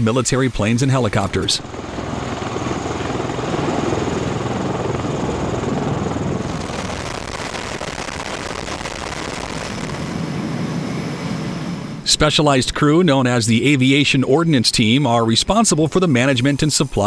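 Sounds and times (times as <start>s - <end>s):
aircraft engine noise: 0.0s - 17.0s
high hiss: 14.8s - 17.0s.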